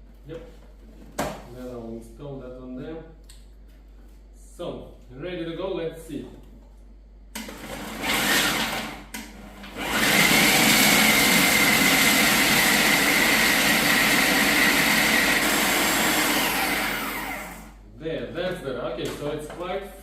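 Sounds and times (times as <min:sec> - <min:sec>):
food processor motor whining: 0:07.4 - 0:17.8.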